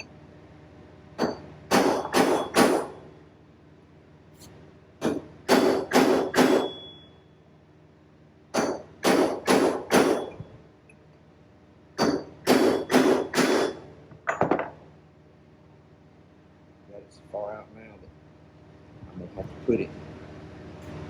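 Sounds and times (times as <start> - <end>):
hammer striking steel punch: 5.0 - 7.0, 8.6 - 10.4, 12.0 - 14.8.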